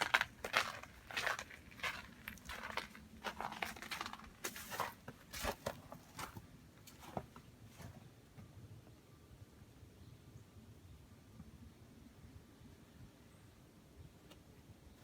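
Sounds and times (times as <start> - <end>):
snow crunching: 0.0 - 7.2.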